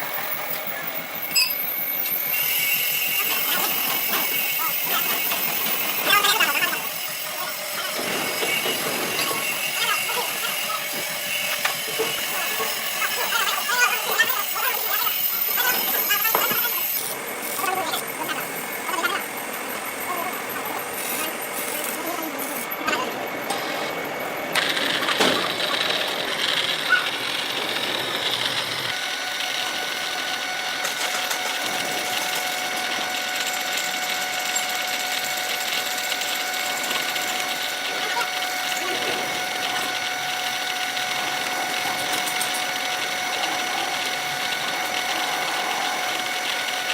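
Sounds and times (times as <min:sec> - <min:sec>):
indistinct voices: 0:00.0 - 0:24.1, 0:36.4 - 0:46.9
hissing workshop noise: 0:00.0 - 0:46.9
machine whining tones: 0:00.0 - 0:46.9.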